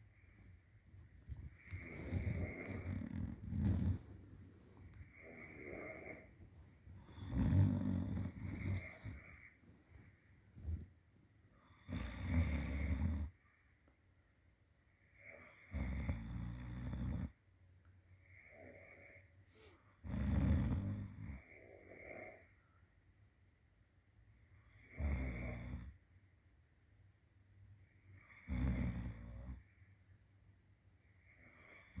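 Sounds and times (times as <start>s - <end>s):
soft breathing: 0.0s - 12.1s, 18.2s - 20.0s
person snoring: 1.3s - 4.2s, 4.9s - 6.4s, 7.0s - 9.6s, 11.8s - 13.3s.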